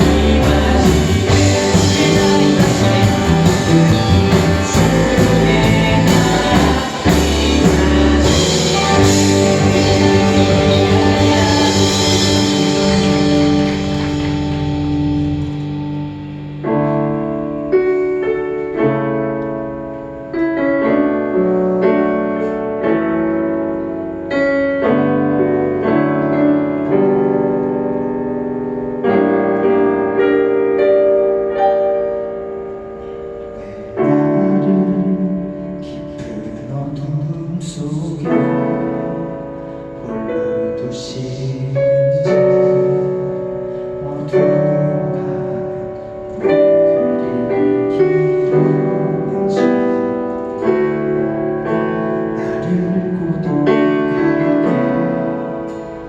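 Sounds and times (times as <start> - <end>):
band playing with cymbals: 0.0 - 16.5
keyboard playing slow chords: 0.0 - 56.0.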